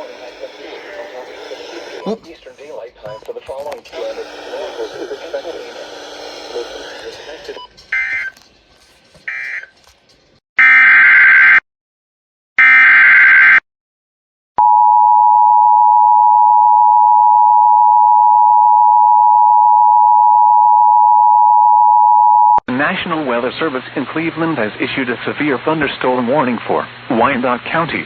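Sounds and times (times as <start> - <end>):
screeching digital data bursts: 0.0 - 2.2, 3.9 - 7.6
steady alarm tone: 0.0 - 2.2, 3.9 - 8.2.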